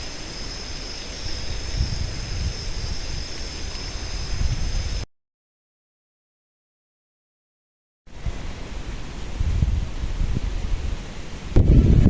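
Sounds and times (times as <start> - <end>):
wind buffeting microphone: 0.0 - 5.0, 8.2 - 12.0.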